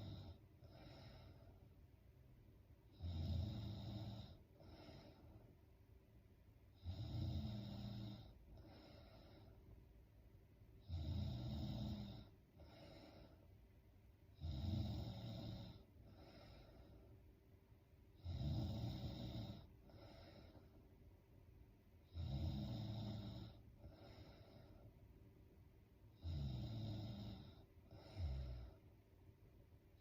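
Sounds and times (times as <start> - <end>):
woman snoring: 0.0 - 1.5, 2.9 - 5.3, 6.7 - 9.5, 10.8 - 13.4, 14.3 - 16.9, 18.2 - 20.7, 22.0 - 24.9, 26.1 - 28.8.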